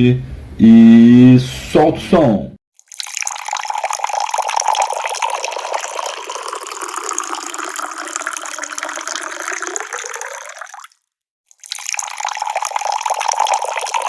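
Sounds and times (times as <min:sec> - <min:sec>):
water pouring into a glass: 0:02.8 - 0:14.0.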